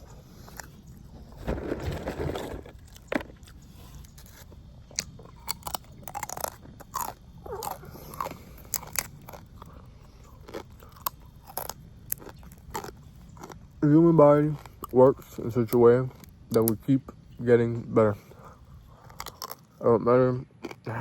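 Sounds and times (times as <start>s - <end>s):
crunching bite of chicken: 0.0s - 16.8s, 18.2s - 19.8s, 20.6s - 21.0s
wet mouth clicks and chewing: 3.0s - 13.8s, 18.4s - 19.8s.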